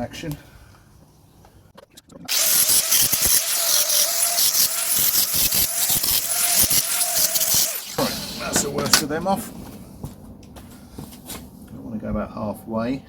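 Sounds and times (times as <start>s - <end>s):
angle grinder cutting nails: 2.3s - 9.0s
angle grinder whine: 2.3s - 9.1s.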